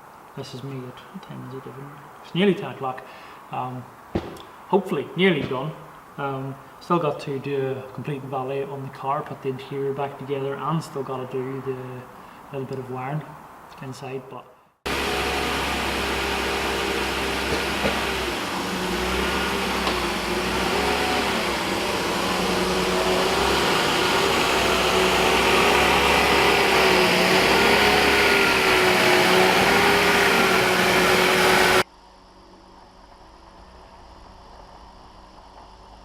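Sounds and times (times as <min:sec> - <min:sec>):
vacuum cleaner running: 0:14.9 - 0:31.9.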